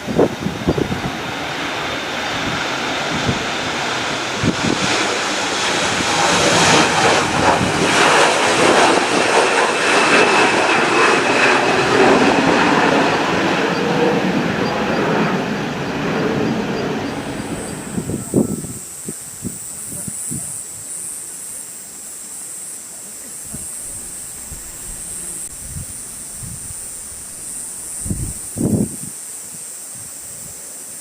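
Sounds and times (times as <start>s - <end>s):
wind thumping on microphone: 0.0s - 1.3s, 4.3s - 5.1s, 5.8s - 9.4s, 17.2s - 18.8s, 23.5s - 29.1s
jet engines roaring: 0.0s - 19.7s, 23.4s - 29.1s
faint high whine: 13.4s - 29.6s.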